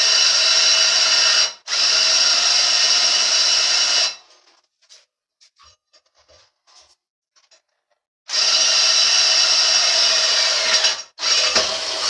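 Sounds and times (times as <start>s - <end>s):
power drill boring: 0.0s - 4.2s, 8.3s - 12.0s.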